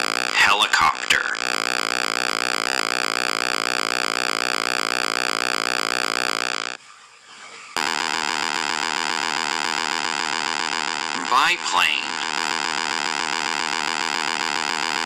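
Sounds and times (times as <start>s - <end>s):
aircraft engine drone: 7.8s - 15.0s
helicopter rotor drone: 7.8s - 15.0s.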